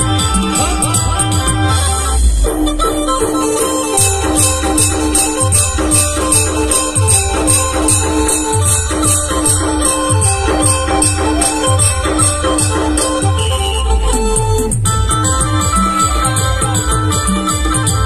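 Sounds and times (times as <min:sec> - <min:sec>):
held melody line: 0:00.0 - 0:18.0
high-pitched percussion ticks: 0:02.5 - 0:18.0
quick drum beat: 0:04.0 - 0:13.5.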